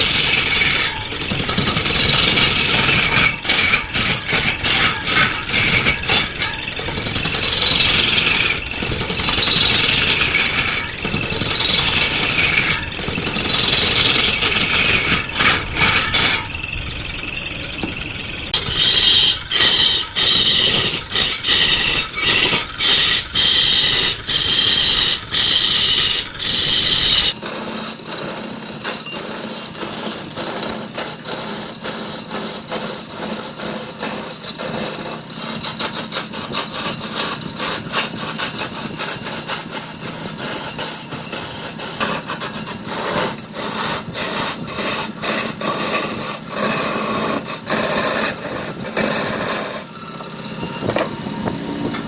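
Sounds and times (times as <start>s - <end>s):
lathe tool scraping spinning wood: 26.8s - 52.0s.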